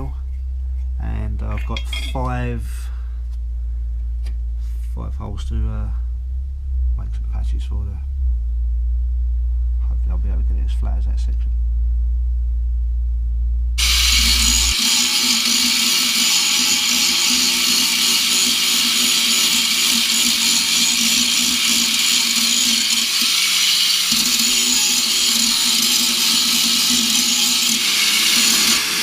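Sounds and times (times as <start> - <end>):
angle grinder cutting steel: 13.8 - 29.0.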